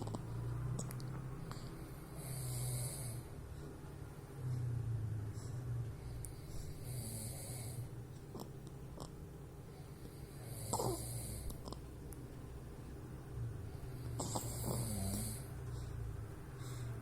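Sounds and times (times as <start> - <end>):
baby snoring: 0.0 - 3.3, 6.4 - 9.2, 10.2 - 12.0, 14.0 - 17.0.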